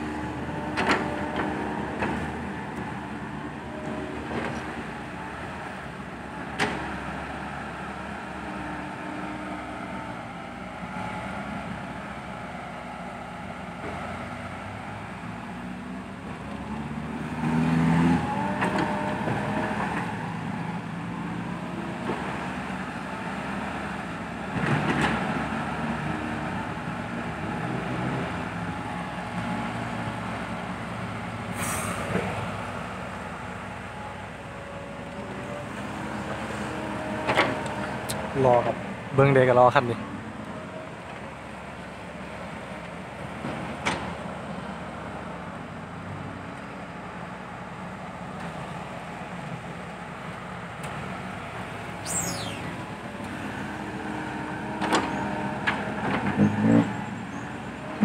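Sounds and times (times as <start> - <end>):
dump truck engines revving: 0.0 - 58.0
high hiss: 52.0 - 52.8.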